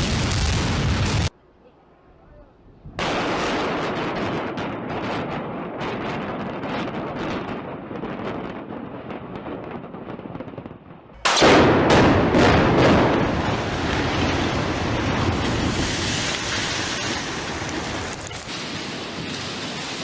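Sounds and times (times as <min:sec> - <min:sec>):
wind noise on microphone: 0:02.6 - 0:11.2
building collapsing rumble: 0:11.2 - 0:20.0
explosive demolition blasts: 0:11.2 - 0:20.0.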